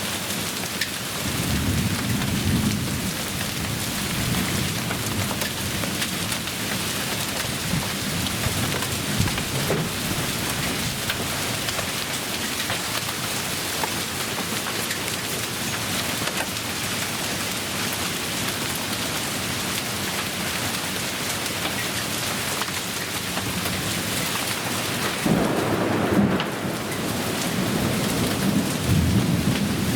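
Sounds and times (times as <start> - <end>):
heavy rain pouring: 0.0 - 29.9.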